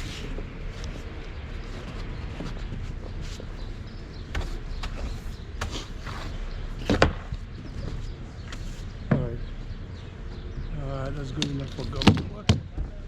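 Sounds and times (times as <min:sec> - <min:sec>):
steady low rumble: 0:00.0 - 0:13.0
scattered knocks: 0:04.2 - 0:05.8.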